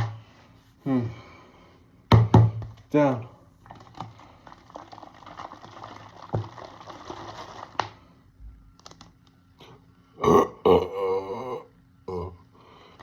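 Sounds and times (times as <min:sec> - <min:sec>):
swallowing and fizzing: 0:03.6 - 0:08.1
loud burps: 0:10.2 - 0:12.4.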